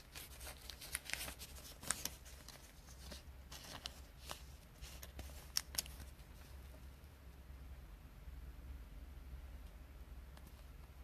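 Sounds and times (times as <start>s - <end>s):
trading cards rustling and sliding: 0.0s - 6.8s.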